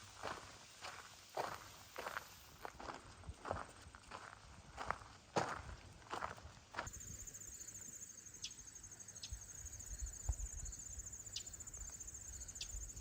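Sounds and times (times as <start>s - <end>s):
footsteps on road: 0.0s - 6.9s
insect trill: 6.9s - 13.0s.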